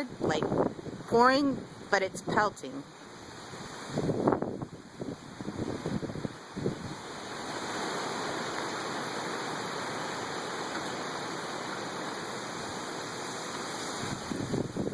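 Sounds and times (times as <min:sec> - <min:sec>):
rain pelting: 0:02.9 - 0:14.9
wind rushing: 0:03.5 - 0:07.0, 0:13.9 - 0:14.9.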